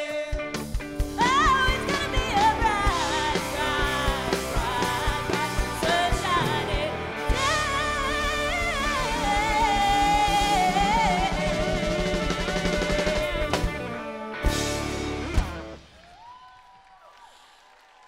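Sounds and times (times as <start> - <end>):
person singing: 0.0 - 14.1
pop band playing: 0.0 - 16.0.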